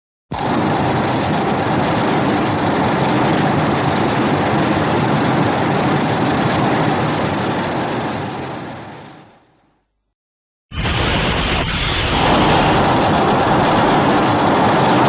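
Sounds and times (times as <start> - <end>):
loud rushing blast: 10.7 - 14.6.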